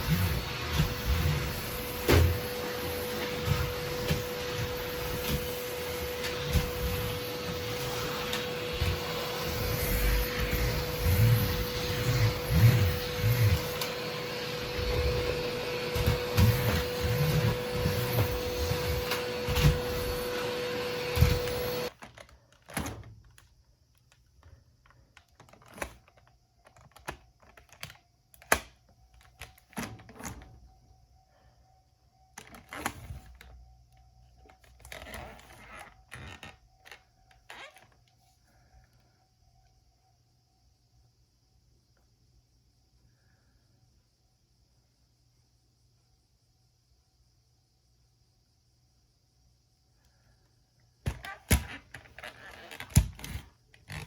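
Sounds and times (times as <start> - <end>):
vacuum cleaner running: 0.0 - 22.0.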